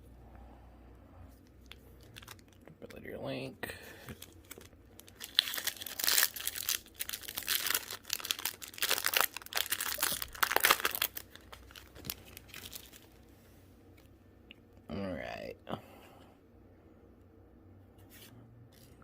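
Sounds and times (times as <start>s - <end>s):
plastic wrapper tearing and crinkling: 1.5s - 2.8s, 4.1s - 13.2s.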